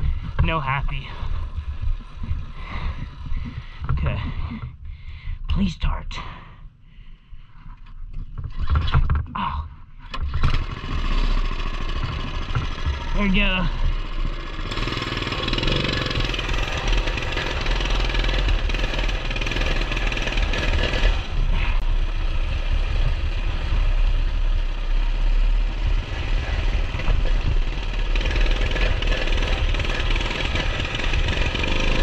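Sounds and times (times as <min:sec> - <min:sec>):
small engine running rough: 0:10.2 - 0:32.0.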